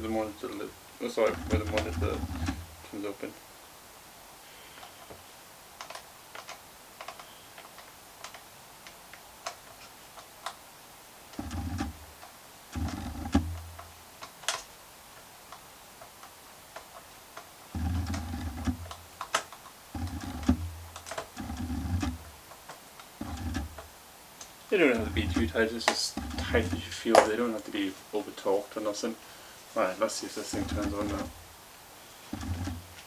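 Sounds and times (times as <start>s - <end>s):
low buzzing: 0.0s - 3.0s, 17.7s - 19.2s, 20.0s - 22.4s, 23.2s - 23.9s, 24.7s - 27.7s, 29.8s - 33.0s.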